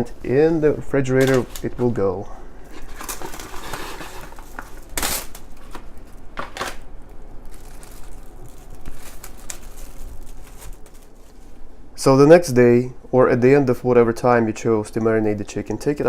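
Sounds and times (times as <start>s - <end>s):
cling wrap crinkling and tearing: 2.7s - 11.6s.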